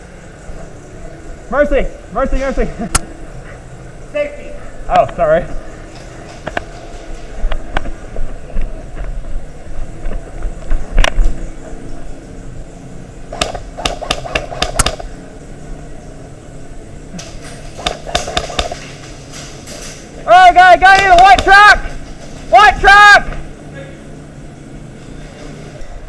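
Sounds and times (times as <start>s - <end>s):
airsoft guns firing: 13.3s - 15.1s, 17.3s - 19.0s, 20.8s - 22.0s.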